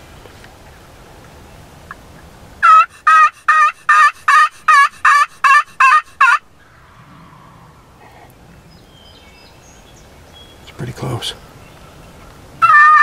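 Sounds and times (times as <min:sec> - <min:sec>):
turkey yelping: 0:02.6 - 0:07.4, 0:12.6 - 0:13.0.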